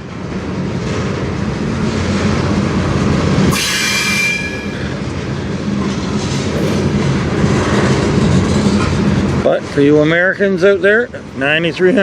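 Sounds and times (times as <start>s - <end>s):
freight train rolling past: 0.0s - 12.0s
wheel squeal: 3.5s - 5.5s.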